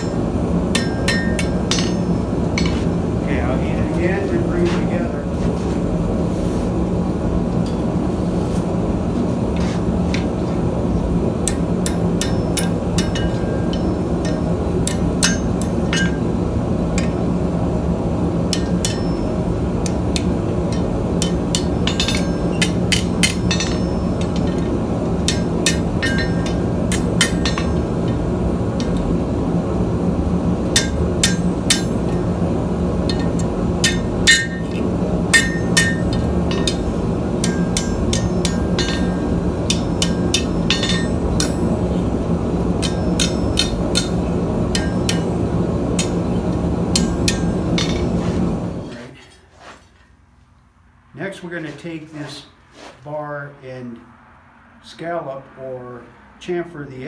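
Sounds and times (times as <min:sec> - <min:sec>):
hammer striking steel: 0:00.0 - 0:04.8, 0:11.4 - 0:17.3, 0:18.5 - 0:29.6, 0:30.4 - 0:48.8
steady hum: 0:00.0 - 0:49.2.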